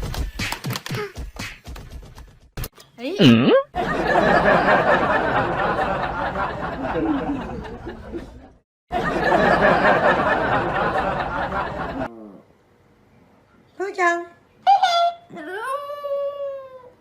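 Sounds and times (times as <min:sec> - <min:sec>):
people laughing and talking: 0:03.8 - 0:12.1.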